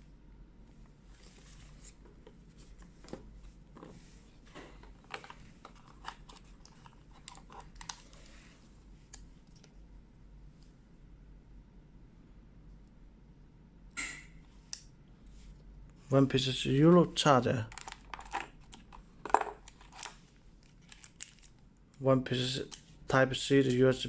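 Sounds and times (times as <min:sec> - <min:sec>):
plastic and cardboard rustling: 0:01.2 - 0:08.4, 0:17.7 - 0:21.5.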